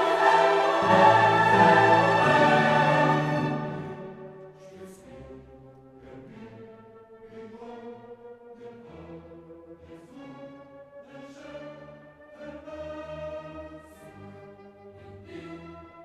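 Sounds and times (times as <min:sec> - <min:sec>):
choir-like voices: 0:00.0 - 0:09.3
orchestral strings: 0:00.0 - 0:16.0.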